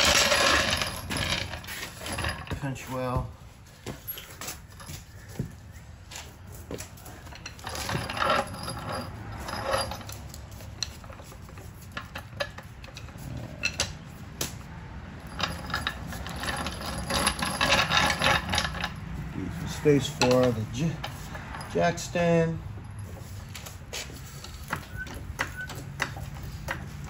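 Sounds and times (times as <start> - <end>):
metallic clinks of car jack and tools: 0.0 - 3.3, 3.9 - 5.6, 6.2 - 27.0.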